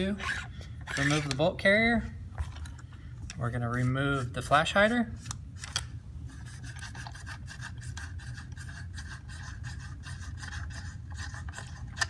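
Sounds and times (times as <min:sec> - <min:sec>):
metal threads rasping: 0:06.3 - 0:12.0.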